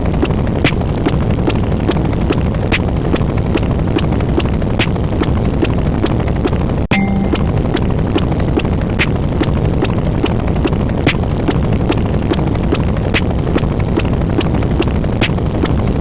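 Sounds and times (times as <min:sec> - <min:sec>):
steady rumbling: 0:00.0 - 0:16.0.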